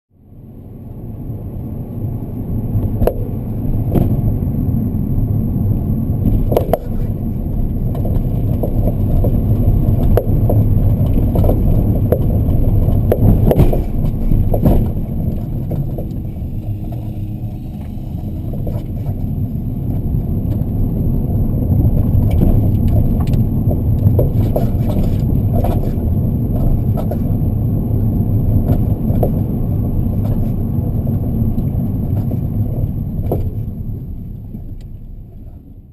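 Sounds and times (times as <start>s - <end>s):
car road rumble: 0.1s - 35.9s
suspension knocking: 6.2s - 27.4s.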